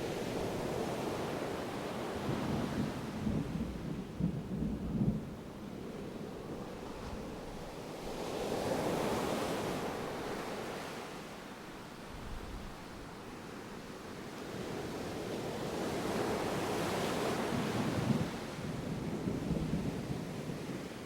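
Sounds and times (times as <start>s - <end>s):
distant thunder rumbling: 2.5s - 6.6s
ocean surf: 6.0s - 21.0s.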